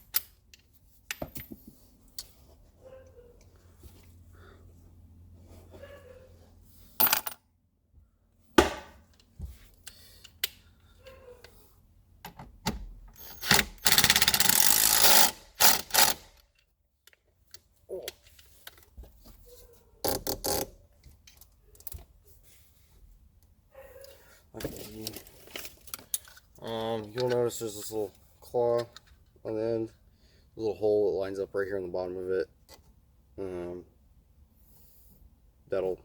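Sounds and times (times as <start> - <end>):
cordless drill running: 13.5 - 16.2
metal parts clicking and clinking: 24.0 - 27.5.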